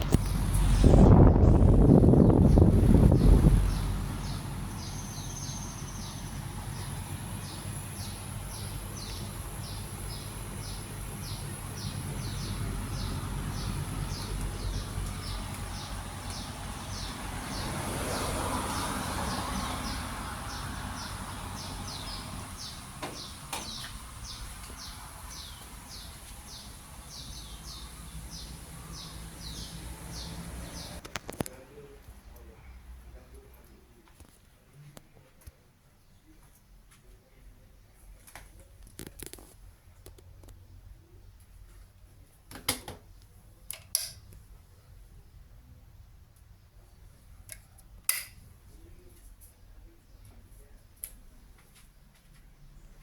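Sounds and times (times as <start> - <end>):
air conditioner hum: 0.0 - 53.0
bird chirping: 0.1 - 18.3, 19.4 - 31.0.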